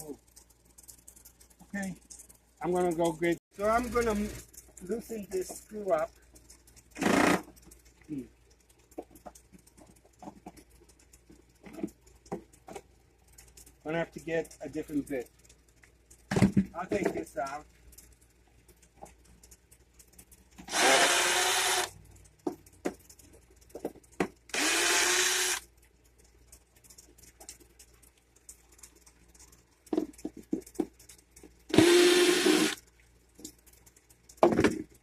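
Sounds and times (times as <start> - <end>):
light clicks and knocks: 0.0 - 20.7, 25.7 - 31.7
power drill running: 20.7 - 21.9, 24.5 - 25.6, 31.7 - 32.8.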